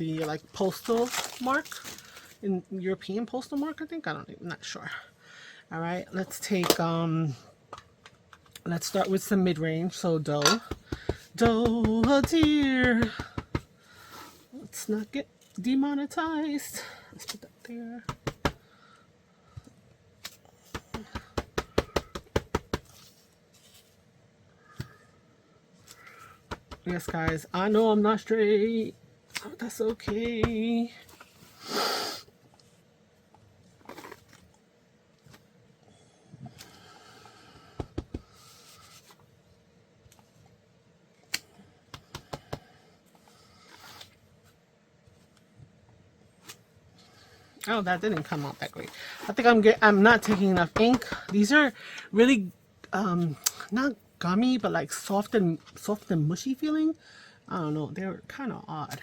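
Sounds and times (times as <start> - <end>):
soft paper rustle: 0.1 - 2.4, 22.8 - 24.1.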